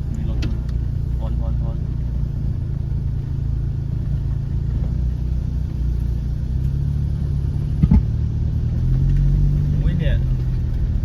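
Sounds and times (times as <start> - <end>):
car engine rumbling at low revs: 0.0 - 11.0.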